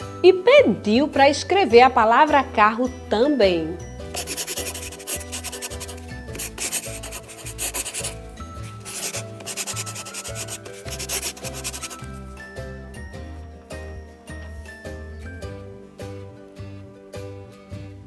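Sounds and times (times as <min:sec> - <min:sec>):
pen scratching while writing: 0:04.1 - 0:12.5.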